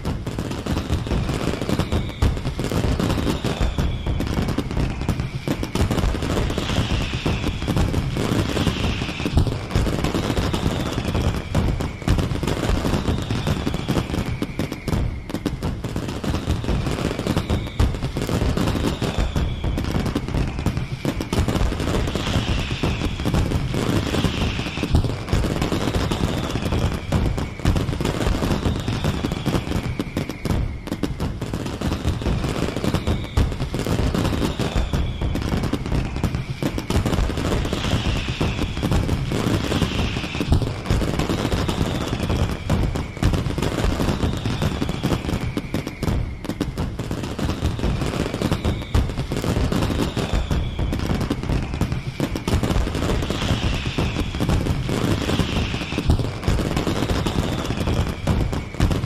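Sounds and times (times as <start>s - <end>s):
fireworks crackling and banging: 0.0s - 59.0s
fireworks whistling: 0.0s - 59.0s.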